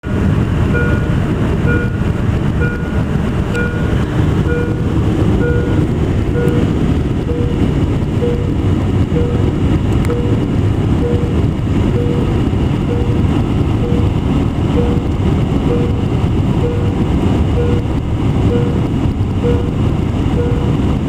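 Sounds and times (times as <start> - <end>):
airliner cabin rumble: 0.0 - 21.0
short electronic beeps: 0.7 - 1.1, 1.7 - 2.0, 2.6 - 3.0, 3.6 - 3.9, 4.5 - 4.8, 5.4 - 10.4, 11.0 - 13.2, 13.8 - 15.1, 15.7 - 17.9, 18.5 - 18.8, 19.4 - 20.8.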